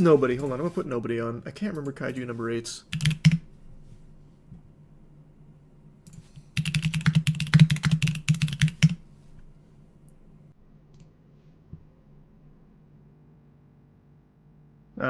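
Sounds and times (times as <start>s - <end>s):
rapid typing on keyboard: 2.9s - 3.5s, 6.1s - 9.0s.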